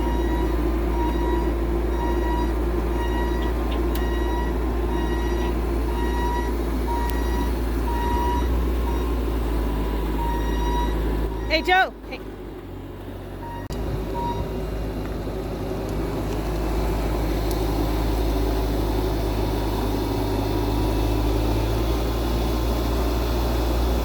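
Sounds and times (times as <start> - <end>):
reversing alarm beeping: 0.0 - 11.9, 13.4 - 14.5
engine low rumble: 0.0 - 24.0.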